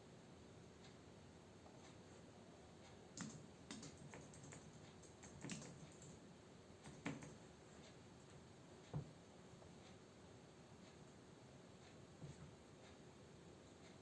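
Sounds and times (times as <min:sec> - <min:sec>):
quiet keyboard keystrokes: 0:02.8 - 0:06.2, 0:06.8 - 0:09.2.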